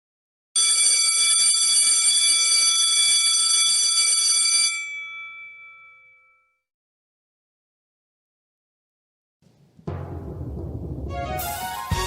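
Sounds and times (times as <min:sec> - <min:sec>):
school bell ringing: 0:00.6 - 0:06.6.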